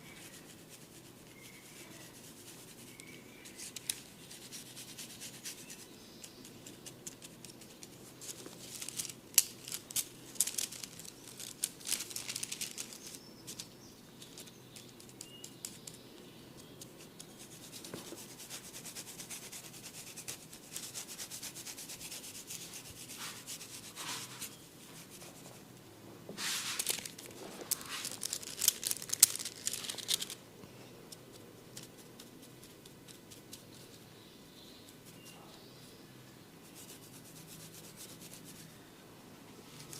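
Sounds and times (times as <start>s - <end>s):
hair and scalp rubbing: 17.4s - 25.6s, 26.4s - 30.3s.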